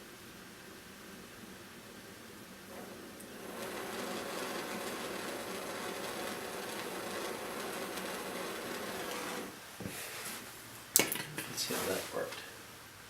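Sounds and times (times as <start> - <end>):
gas torch flame hissing: 0.8 - 10.2.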